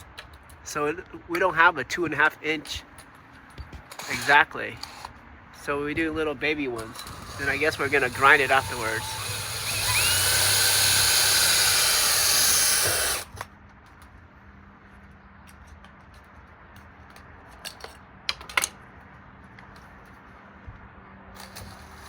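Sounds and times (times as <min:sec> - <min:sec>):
power drill boring: 0:04.0 - 0:05.1, 0:06.8 - 0:13.4.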